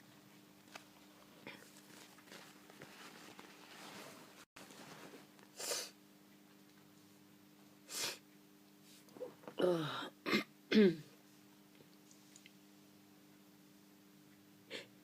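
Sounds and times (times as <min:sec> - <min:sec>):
breathy sniffs: 0:05.6 - 0:06.0.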